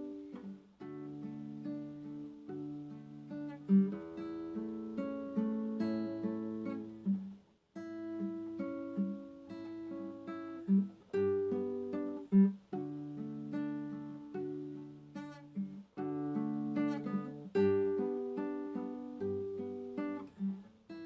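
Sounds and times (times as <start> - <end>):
acoustic guitar plucking: 0.0 - 21.0.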